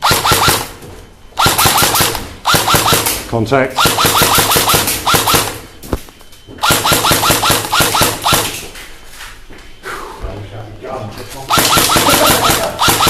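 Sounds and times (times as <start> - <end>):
airsoft gun firing bursts: 0.0 - 0.8, 1.4 - 5.6, 6.6 - 8.6, 11.5 - 13.0.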